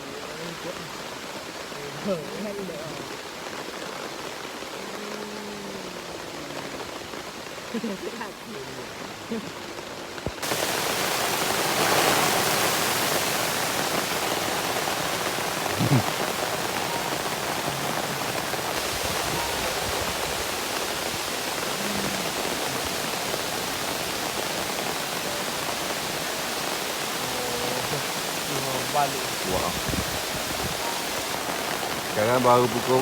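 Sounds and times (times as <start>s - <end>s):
heavy rain in strong wind: 0.0s - 33.0s.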